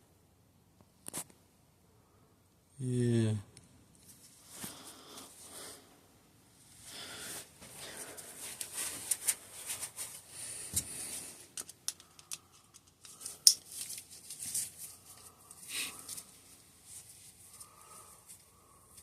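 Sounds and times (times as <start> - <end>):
small sharp clicks: 11.6 - 13.6.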